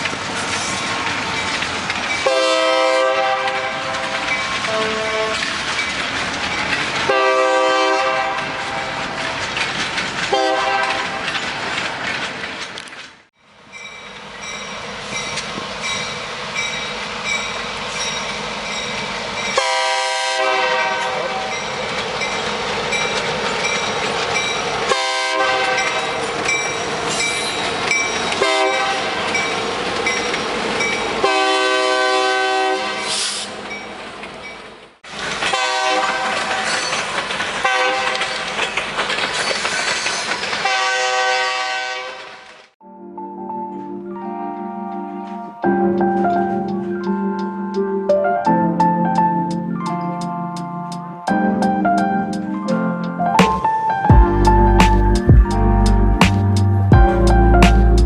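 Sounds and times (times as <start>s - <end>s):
train rumble and clatter: 0.0s - 41.5s, 45.3s - 58.0s
train air horn blasts: 2.2s - 5.5s, 7.1s - 9.2s, 10.3s - 11.2s, 19.6s - 21.5s, 24.9s - 26.2s, 28.4s - 29.2s, 31.2s - 33.5s, 35.5s - 36.6s, 37.6s - 38.2s, 40.6s - 42.5s.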